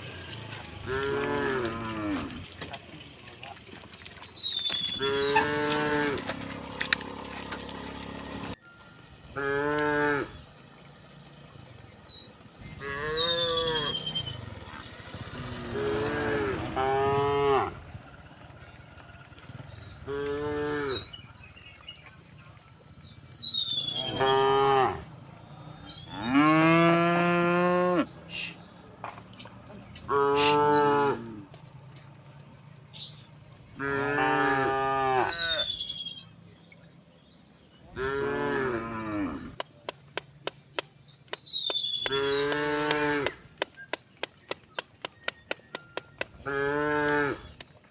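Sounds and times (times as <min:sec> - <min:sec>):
cattle mooing: 0:00.2 - 0:02.5, 0:05.0 - 0:08.6, 0:09.4 - 0:10.4, 0:12.7 - 0:17.9, 0:20.0 - 0:21.1, 0:23.9 - 0:28.2, 0:30.0 - 0:31.5, 0:33.8 - 0:35.7, 0:37.9 - 0:39.6, 0:42.1 - 0:43.4, 0:46.4 - 0:47.6
faint birds chirping: 0:08.5 - 0:47.9.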